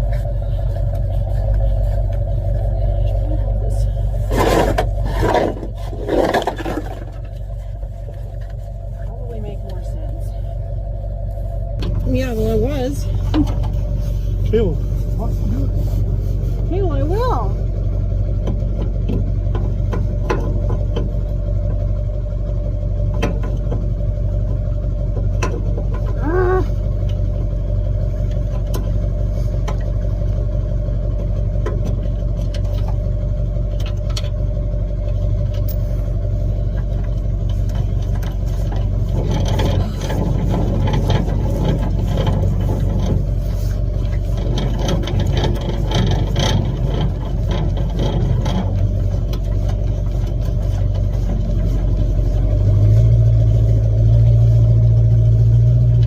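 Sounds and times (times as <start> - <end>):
pickup truck engine idling: 0.0 - 56.0.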